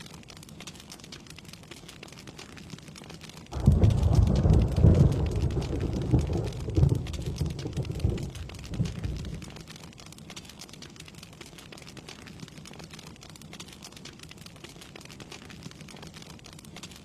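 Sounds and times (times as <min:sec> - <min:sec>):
steady rain pattering: 0:00.0 - 0:17.0
thunder rumble: 0:03.6 - 0:09.6.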